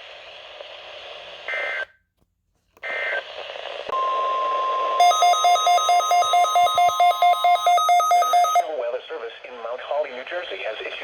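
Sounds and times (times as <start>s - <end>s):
shrill electronic alarm beeping: 4.0s - 8.7s
steady alarm tone: 4.0s - 8.7s
radio hiss: 8.7s - 11.0s.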